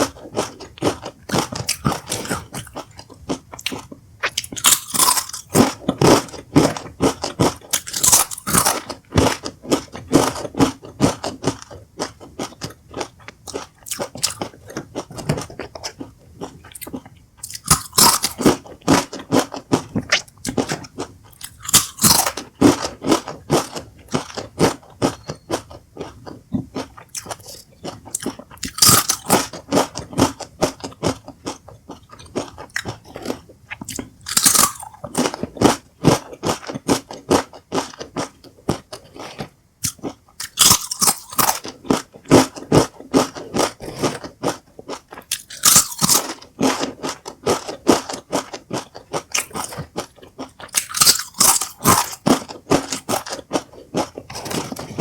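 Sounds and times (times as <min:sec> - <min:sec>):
chips crunching while chewed: 0:00.0 - 0:55.0.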